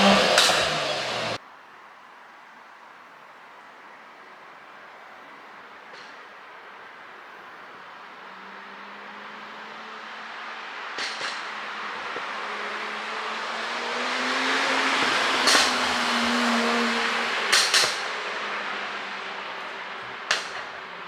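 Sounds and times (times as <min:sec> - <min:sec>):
car engine running: 0:00.0 - 0:01.4
sharp exhaust pops: 0:00.0 - 0:01.4, 0:10.9 - 0:21.0.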